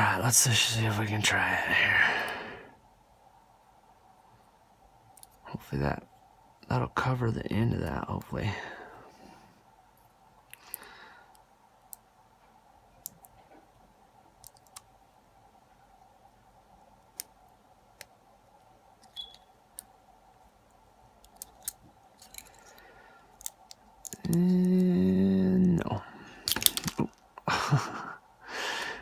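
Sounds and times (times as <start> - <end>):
metal tools clicking on lock: 26.5 - 27.0.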